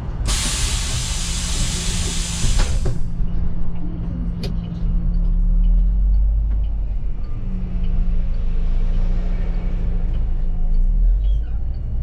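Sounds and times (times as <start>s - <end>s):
bus engine idling: 0.0s - 7.3s
bus air brake hiss: 0.2s - 3.0s.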